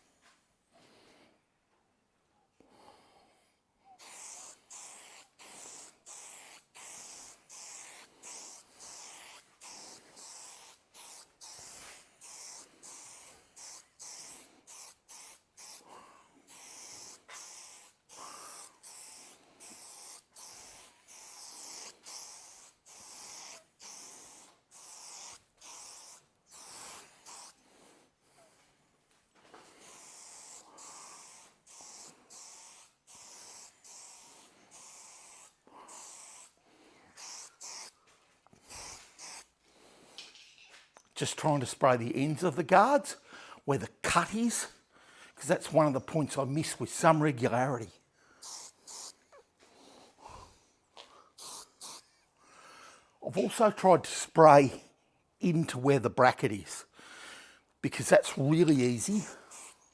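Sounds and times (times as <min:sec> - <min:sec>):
spray paint can hissing: 0:04.0 - 0:27.6, 0:29.8 - 0:38.0, 0:38.6 - 0:39.6, 0:45.4 - 0:47.8, 0:48.4 - 0:49.2, 0:51.4 - 0:52.1, 0:53.3 - 0:54.6, 0:57.9 - 0:59.9.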